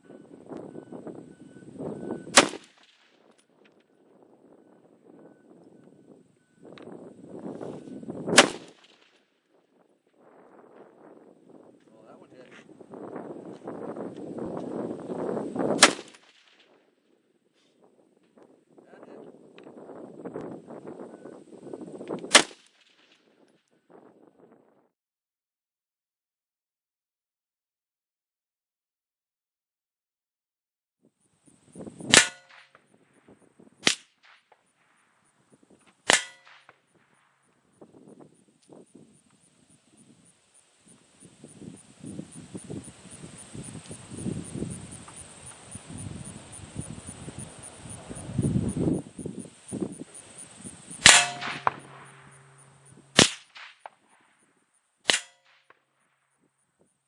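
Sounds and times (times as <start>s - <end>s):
rifle shots: 2.3s - 3.1s, 8.3s - 9.0s, 15.8s - 16.6s, 22.3s - 22.7s, 32.1s - 32.7s, 36.1s - 36.7s, 51.0s - 53.9s, 55.1s - 55.6s
bullets clanging on steel plate: 32.2s - 32.6s, 36.1s - 36.6s, 51.0s - 53.2s.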